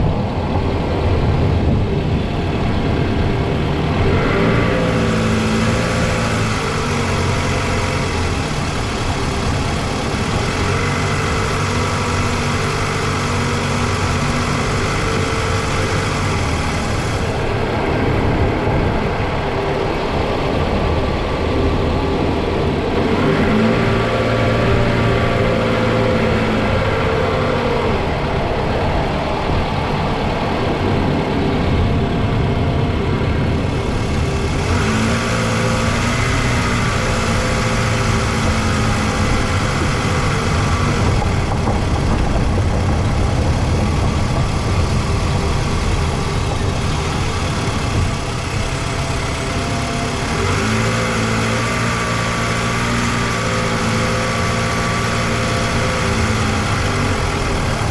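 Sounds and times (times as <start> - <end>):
petrol engine running: 0.0 - 57.9.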